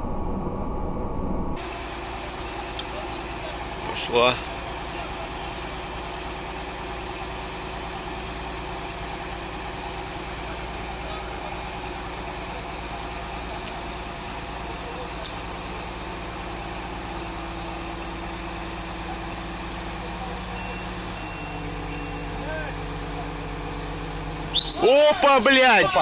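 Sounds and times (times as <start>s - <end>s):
high whine: 0.0s - 26.0s
vehicle engine running: 0.0s - 26.0s
sharp clicks: 19.6s - 20.0s.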